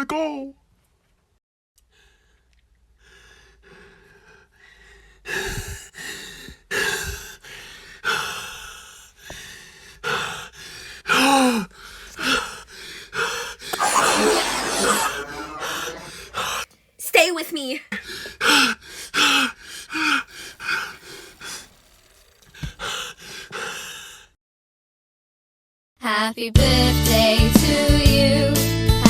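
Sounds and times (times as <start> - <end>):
person gasping and breathing hard: 3.0 - 16.6, 17.9 - 24.4
person whimpering: 13.7 - 16.6.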